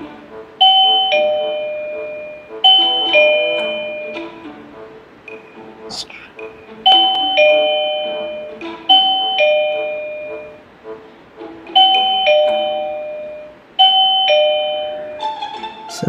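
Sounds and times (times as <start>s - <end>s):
two-note door chime: 0.6s - 4.5s, 6.8s - 10.6s, 11.7s - 15.5s.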